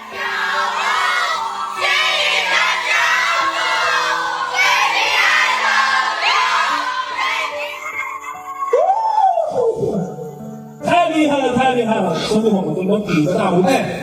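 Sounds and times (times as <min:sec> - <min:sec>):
crowd singing along: 0:00.0 - 0:08.0
backing music: 0:00.0 - 0:08.6.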